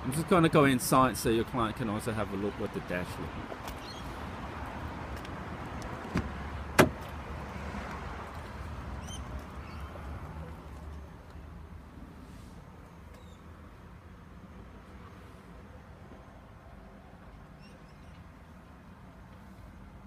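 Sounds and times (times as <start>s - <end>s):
car door shutting: 6.0s - 7.2s.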